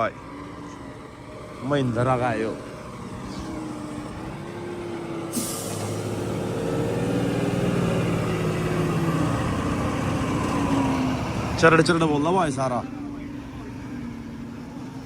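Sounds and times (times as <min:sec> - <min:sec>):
tractor diesel engine approaching: 0:00.0 - 0:15.0
short hiss: 0:05.3 - 0:05.9.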